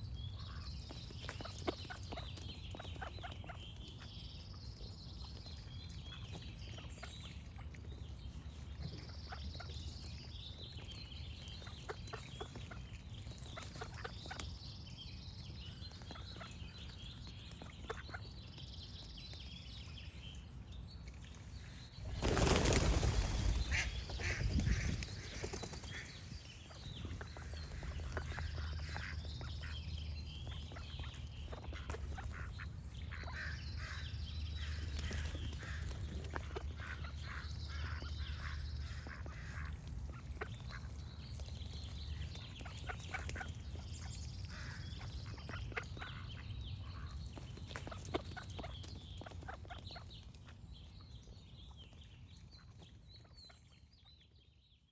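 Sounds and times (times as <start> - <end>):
songbirds chirping: 0.0 - 54.9
ducks quacking: 23.6 - 26.1.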